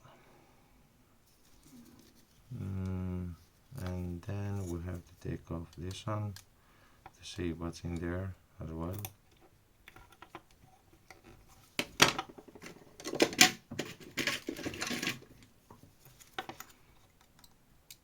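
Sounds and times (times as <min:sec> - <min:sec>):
plastic scraping and rasping: 0:09.4 - 0:15.5.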